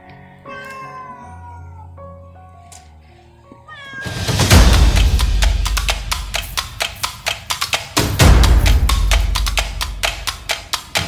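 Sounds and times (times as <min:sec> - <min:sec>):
heavy bass hit: 0:04.2 - 0:07.0, 0:08.0 - 0:10.5
clicking woodblock beat: 0:04.3 - 0:11.0.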